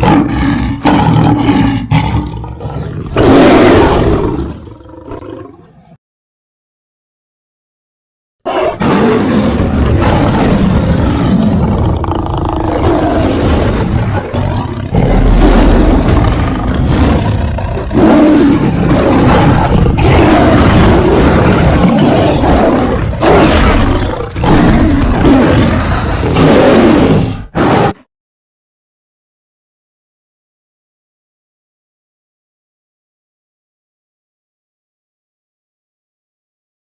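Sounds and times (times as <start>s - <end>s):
big cat growling roars: 0.0s - 6.0s, 8.5s - 28.0s.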